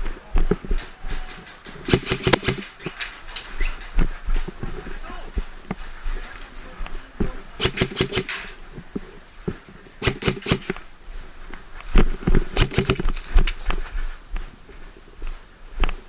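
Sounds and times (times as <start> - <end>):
rapid sharp clicks: 1.5 - 3.4, 7.6 - 8.6, 10.0 - 10.8, 12.6 - 13.6.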